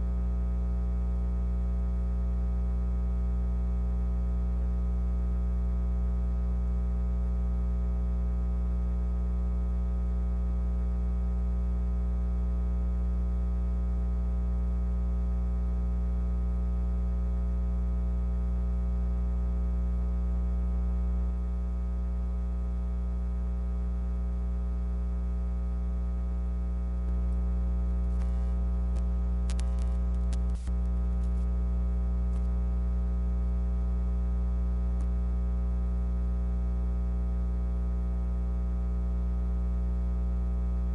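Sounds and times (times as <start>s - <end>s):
electrical hum: 0.0s - 12.0s, 16.6s - 36.2s
faint clicks: 28.1s - 31.4s.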